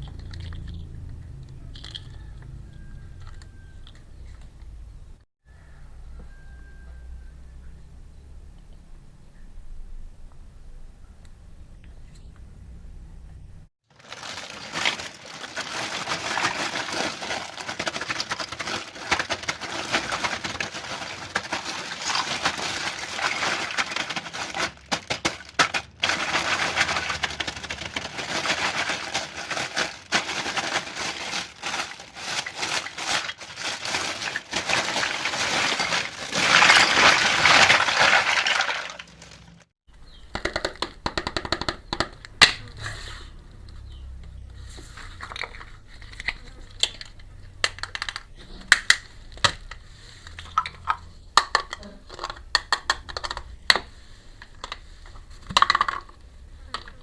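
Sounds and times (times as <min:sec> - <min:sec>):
plastic packaging crinkling: 0:13.9 - 0:39.7.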